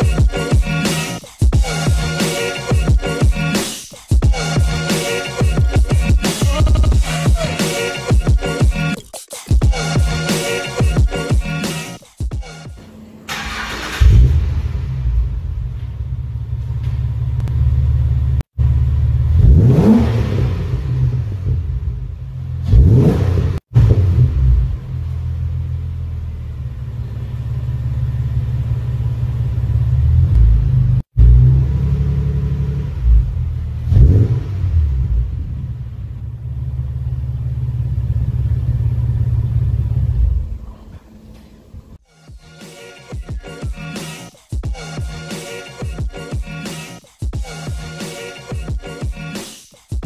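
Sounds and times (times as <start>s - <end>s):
car engine idling and revving: 13.3s - 40.8s.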